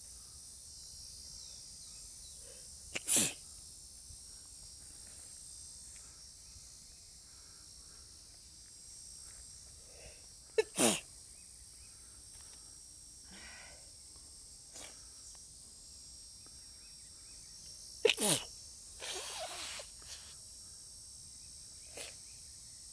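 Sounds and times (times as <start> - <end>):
person sneezing: 3.0 - 3.4, 10.6 - 11.1, 14.7 - 15.0, 18.0 - 20.3.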